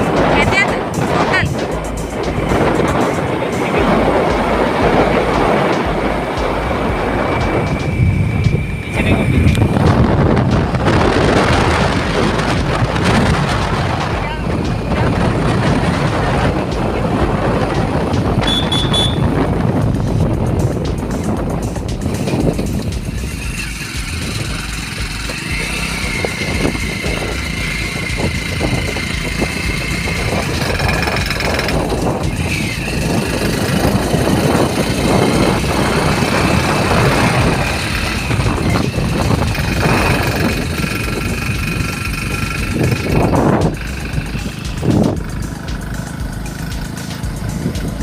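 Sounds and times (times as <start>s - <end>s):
vehicle engine and road rumble: 0.0s - 48.0s.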